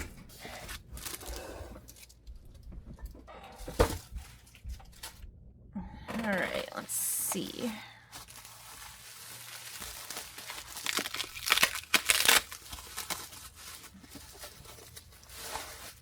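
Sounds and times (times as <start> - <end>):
packaging crinkling and tearing: 0.6 - 2.2, 8.1 - 16.0.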